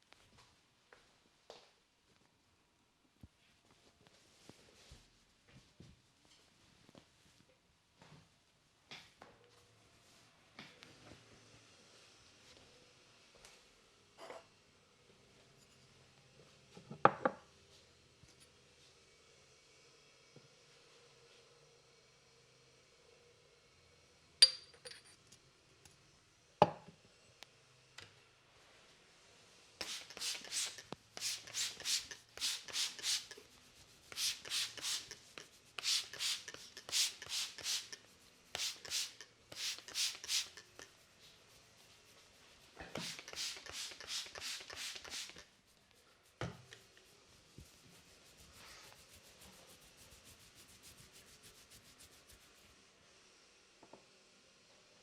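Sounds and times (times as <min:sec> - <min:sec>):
hands rubbing hair and scalp: 0:29.8 - 0:52.8.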